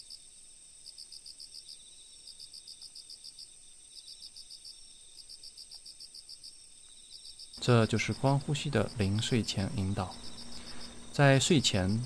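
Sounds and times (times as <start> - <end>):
crickets chirping: 0.0 - 12.0
steady high-pitched hum: 7.6 - 12.0.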